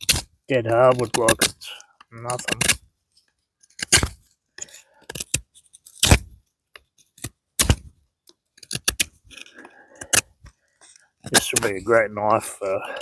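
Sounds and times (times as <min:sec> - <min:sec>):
knife shaving wood: 0:08.6 - 0:11.9.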